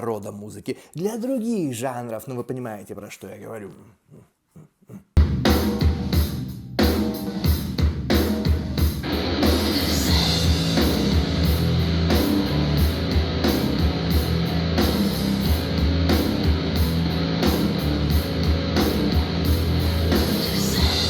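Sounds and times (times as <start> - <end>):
heavy rock music: 5.2 - 21.0.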